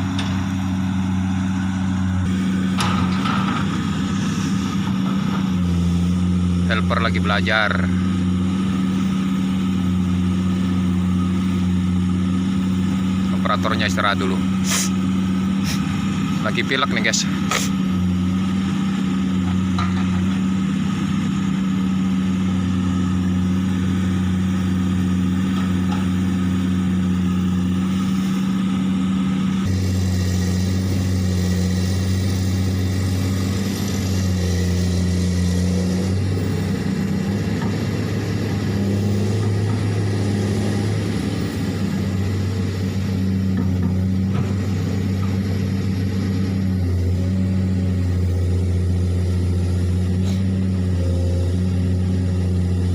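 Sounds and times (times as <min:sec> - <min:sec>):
excavator diesel engine running: 0:00.0 - 0:52.9.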